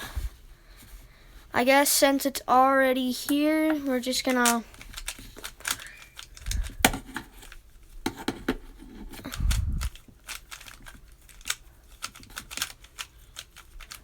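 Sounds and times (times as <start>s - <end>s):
puzzle cube clicking and snapping: 4.3s - 14.0s.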